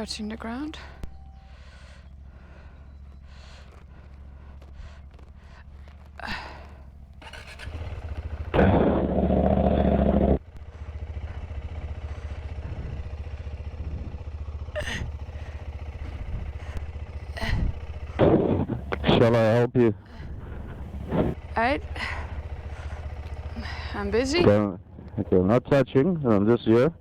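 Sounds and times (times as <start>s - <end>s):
motorcycle engine revving and idling: 0.0s - 27.0s.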